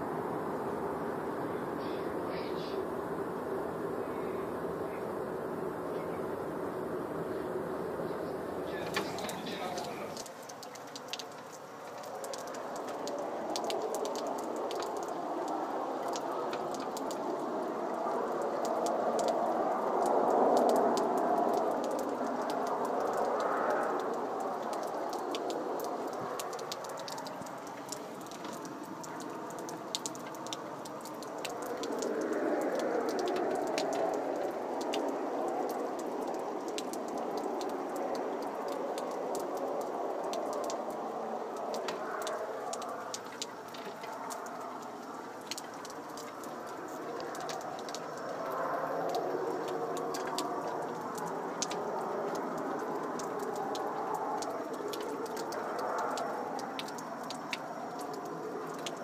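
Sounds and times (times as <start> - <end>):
crackle of small clicks: 8.8 - 15.2, 21.4 - 37.7, 41.6 - 44.7, 45.4 - 59.0.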